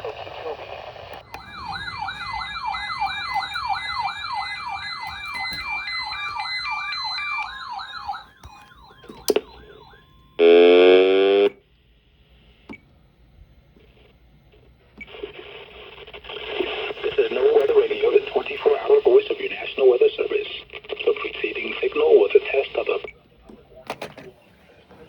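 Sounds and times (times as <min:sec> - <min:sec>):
loud tone burst: 0:00.0 - 0:11.6
electronic siren alert tone: 0:01.2 - 0:11.6.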